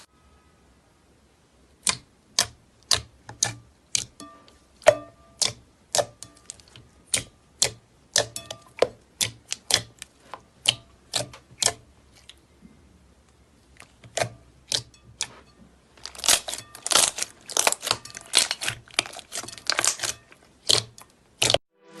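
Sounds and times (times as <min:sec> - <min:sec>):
slime clicking and popping: 0:01.8 - 0:04.2, 0:04.8 - 0:11.8, 0:13.8 - 0:15.3, 0:16.1 - 0:21.6.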